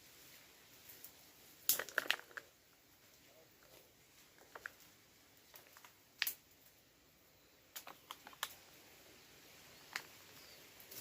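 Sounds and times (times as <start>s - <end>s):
faint sharp clicks: 9.9s - 10.2s.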